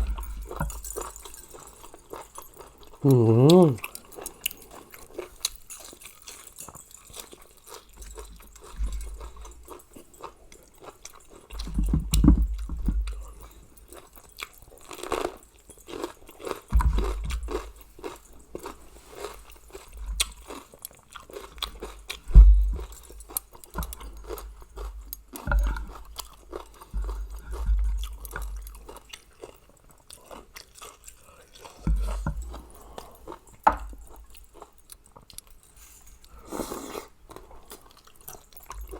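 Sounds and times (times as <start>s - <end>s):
chewing and crunching: 0.0s - 38.9s
dull low thumps: 22.3s - 23.0s.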